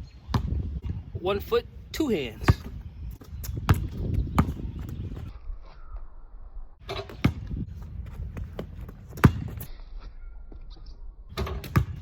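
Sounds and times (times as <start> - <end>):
basketball bouncing: 2.5 - 5.2, 6.9 - 9.7, 11.3 - 12.0.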